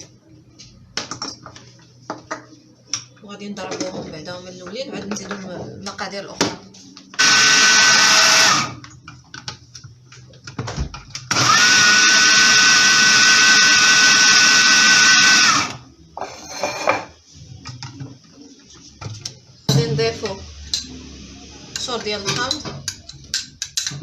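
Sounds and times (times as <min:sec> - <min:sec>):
electric mixer whining: 0:07.2 - 0:08.8, 0:11.3 - 0:15.8.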